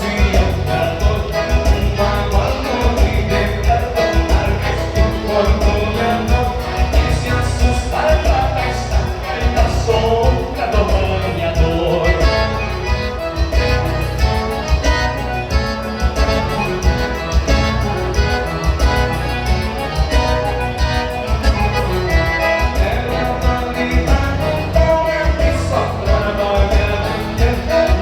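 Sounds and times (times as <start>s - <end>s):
person singing: 0.0s - 12.8s, 22.3s - 28.0s
accordion-like melody: 0.0s - 28.0s
instrumental music with steady beat: 0.0s - 28.0s.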